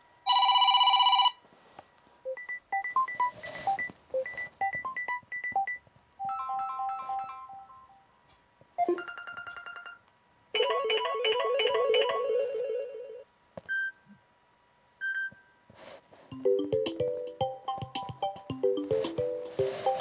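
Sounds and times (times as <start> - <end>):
melodic ringtone tune: 6.2 - 8.0, 10.6 - 13.2, 16.3 - 20.0
fast pulsing ringtone: 8.8 - 10.0, 10.6 - 13.2, 16.3 - 20.0.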